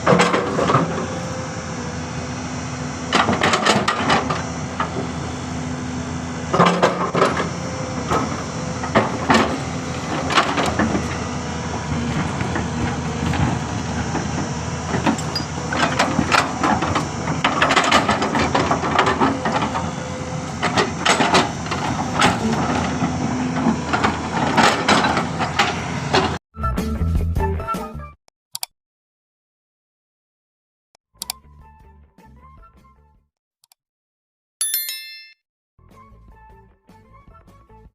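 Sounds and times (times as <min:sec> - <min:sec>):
excavator diesel engine running: 0:00.0 - 0:26.4
metallic clanks and knocks: 0:06.5 - 0:11.1, 0:15.0 - 0:19.8.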